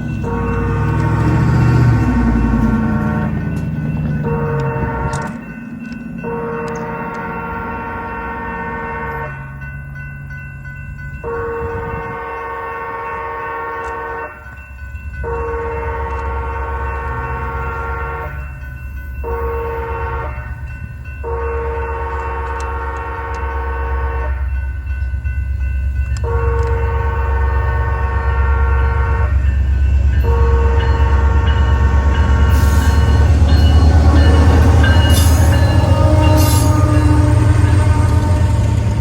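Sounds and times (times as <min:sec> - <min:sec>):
low train rumble: 0:00.0 - 0:39.0
locomotive air horn blasts: 0:02.7 - 0:03.4, 0:04.2 - 0:05.4, 0:06.2 - 0:09.4, 0:11.3 - 0:14.4, 0:15.2 - 0:18.4, 0:19.3 - 0:20.6, 0:21.2 - 0:24.5, 0:26.2 - 0:29.5, 0:30.2 - 0:39.0.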